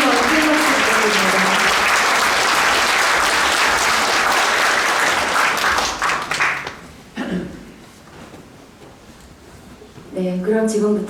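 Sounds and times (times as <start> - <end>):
audience applauding: 0.0 - 6.9.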